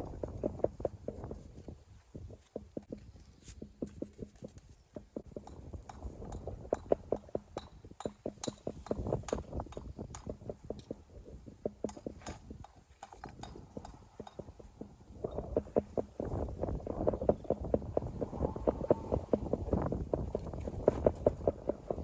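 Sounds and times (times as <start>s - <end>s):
hammer striking stone: 5.4s - 10.9s.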